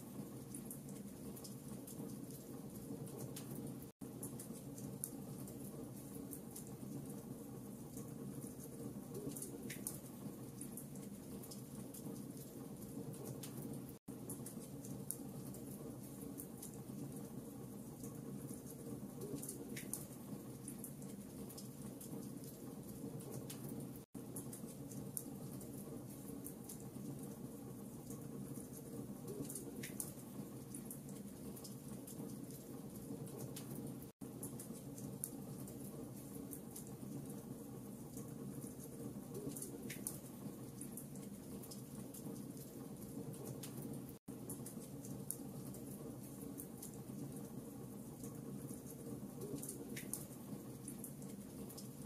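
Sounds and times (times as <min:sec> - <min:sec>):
logs burning in a fireplace: 0:00.0 - 0:52.0
low rumble of flames: 0:00.0 - 0:52.0.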